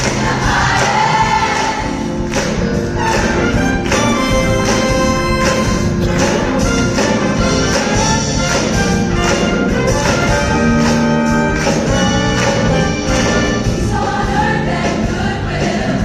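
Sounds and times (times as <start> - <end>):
orchestra playing: 1.2 - 14.7
brass playing: 2.9 - 14.0.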